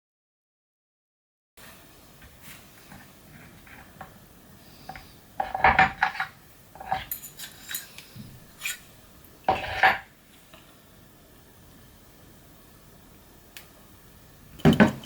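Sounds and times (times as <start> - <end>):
metal objects clinking and clattering: 5.4 - 8.0, 14.6 - 15.0.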